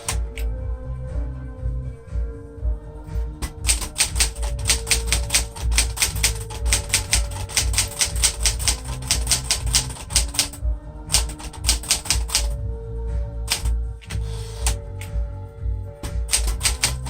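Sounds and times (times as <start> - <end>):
typewriter keys striking: 3.4 - 12.6, 13.5 - 14.8, 16.2 - 17.0.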